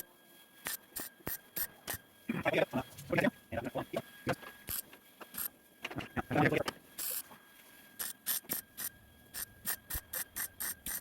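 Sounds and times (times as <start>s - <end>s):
faint high whine: 0.0s - 11.0s
sharp mechanical clicks: 8.0s - 11.0s.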